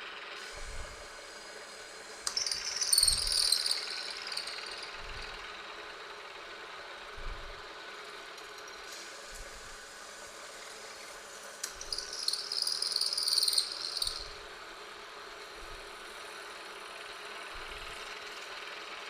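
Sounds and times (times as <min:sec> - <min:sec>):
milling machine running: 0:00.1 - 0:19.0
high-pitched cutter screech: 0:00.6 - 0:05.0, 0:10.5 - 0:14.5.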